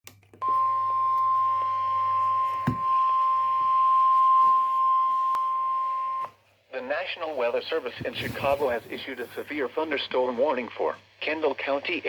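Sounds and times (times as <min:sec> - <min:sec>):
long steady warning beep: 0:00.4 - 0:06.4.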